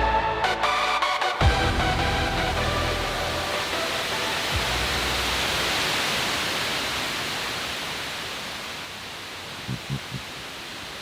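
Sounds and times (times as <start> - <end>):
static hiss: 2.6 - 11.0
short low thumps: 9.7 - 10.2.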